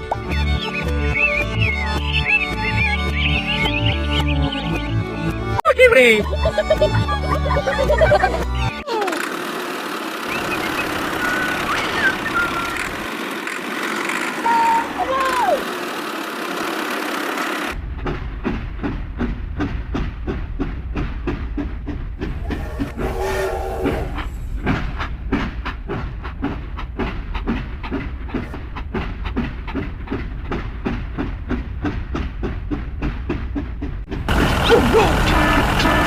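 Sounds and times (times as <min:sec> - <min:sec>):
wheels clacking over rail joints: 0:07.2 - 0:23.3, 0:23.9 - 0:36.0
train rumble: 0:10.0 - 0:36.0.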